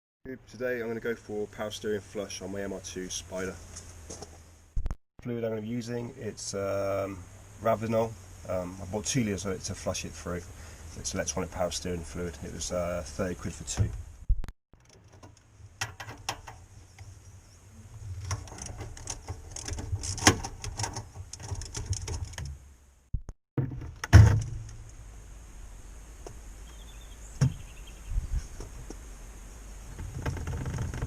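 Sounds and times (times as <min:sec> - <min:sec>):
heavy thump: 0:23.6 - 0:24.7.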